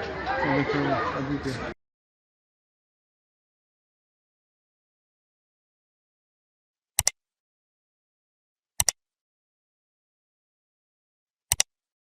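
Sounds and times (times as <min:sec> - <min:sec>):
sharp double clicks: 0:07.0 - 0:07.2, 0:08.8 - 0:09.0, 0:11.5 - 0:11.8.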